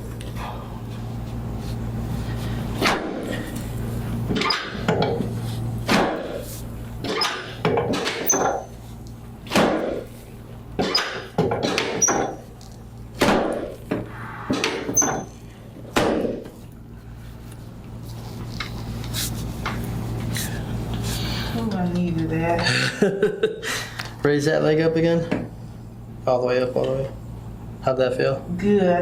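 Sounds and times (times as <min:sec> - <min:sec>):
steady low hum: 0:00.0 - 0:29.0
knocks and thuds on a back: 0:15.9 - 0:16.6.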